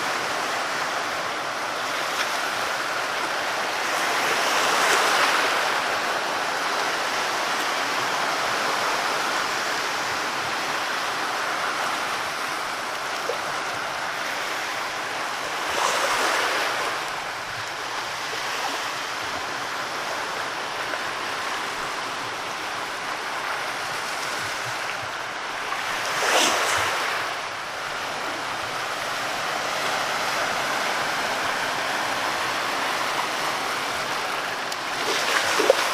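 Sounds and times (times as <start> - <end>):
steady surf: 0.0 - 35.9
wave breaking: 25.5 - 29.1, 33.7 - 35.9.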